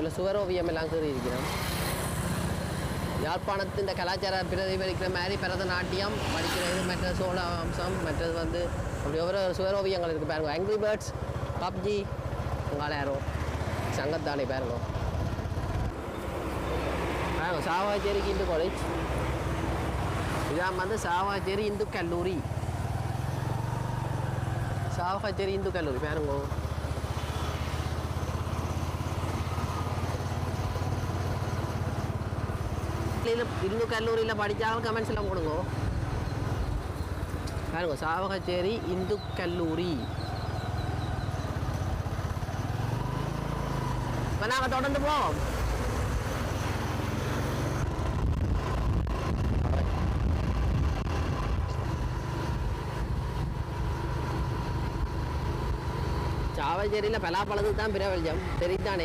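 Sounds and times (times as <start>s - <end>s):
motorcycle engine running: 9.2s - 16.4s, 21.1s - 59.0s
wind noise on microphone: 47.8s - 53.7s.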